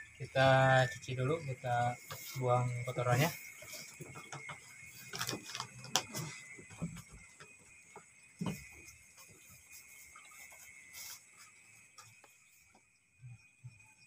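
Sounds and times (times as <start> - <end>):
steady high-pitched whine: 0.0 - 14.0
knocks and rustling handling fish: 3.4 - 12.8.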